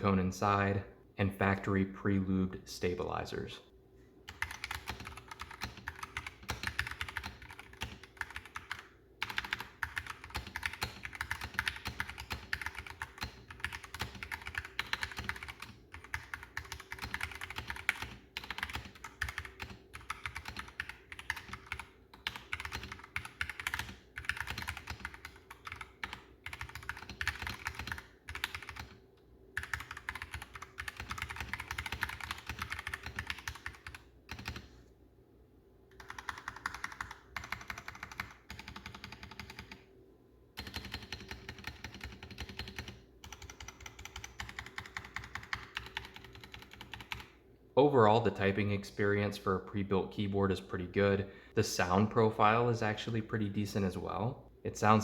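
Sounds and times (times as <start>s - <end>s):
mechanical keyboard typing: 4.3s - 29.0s, 29.6s - 34.7s, 35.9s - 39.9s, 40.6s - 47.4s.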